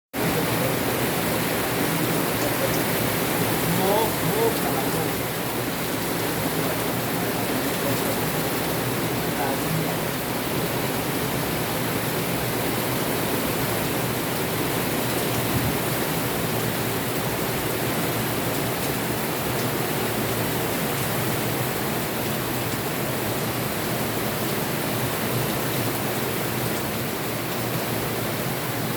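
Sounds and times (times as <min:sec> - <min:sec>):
heavy rain hissing: 0:00.2 - 0:28.9.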